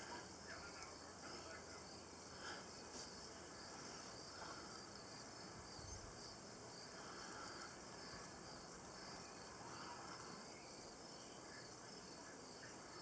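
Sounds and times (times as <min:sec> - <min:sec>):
background hiss: 0:00.0 - 0:13.0
crickets chirring: 0:00.0 - 0:13.0.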